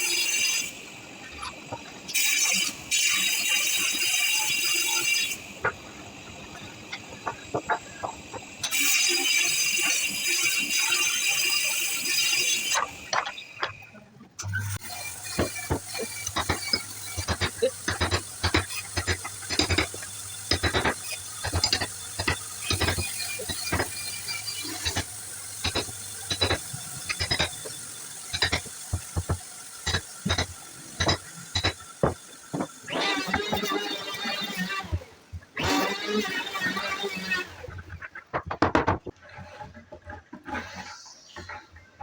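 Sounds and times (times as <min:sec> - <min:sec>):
hand tool knocking on wood: 0:15.4 - 0:24.0, 0:28.4 - 0:32.7, 0:38.4 - 0:39.0.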